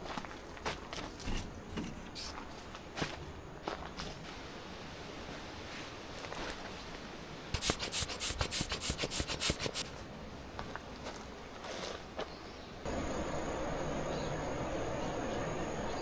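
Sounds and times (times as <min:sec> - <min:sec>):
hand saw rasping through dry wood: 0:07.6 - 0:09.8.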